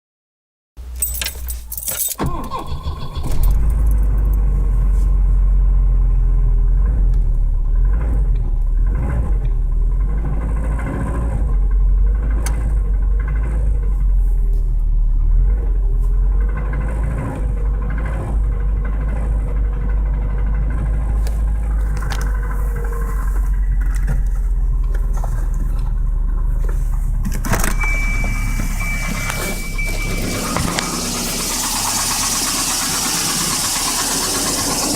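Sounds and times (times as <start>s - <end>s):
car engine knocking: 15.1s - 34.9s
steady high tone: 27.6s - 34.9s.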